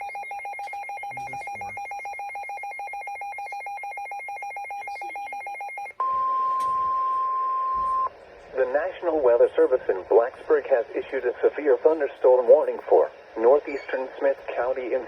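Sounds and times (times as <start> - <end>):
steady warning alarm tone: 0.0 - 8.1.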